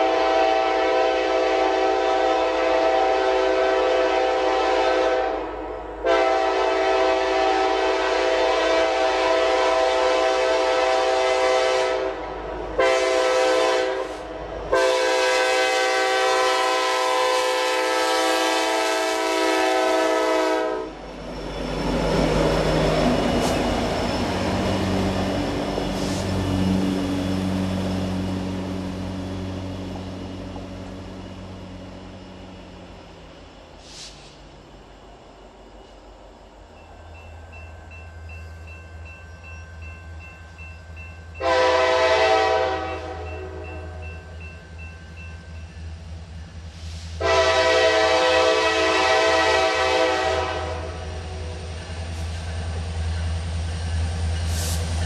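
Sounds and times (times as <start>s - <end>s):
locomotive air horn blasts: 0.0s - 21.0s, 41.4s - 44.0s, 47.2s - 51.4s
locomotive engines rumbling: 0.0s - 55.0s.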